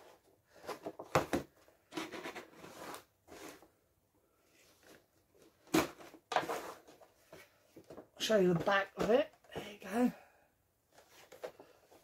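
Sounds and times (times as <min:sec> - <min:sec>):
packaging rustling and scraping: 0:00.0 - 0:03.8, 0:04.6 - 0:08.0.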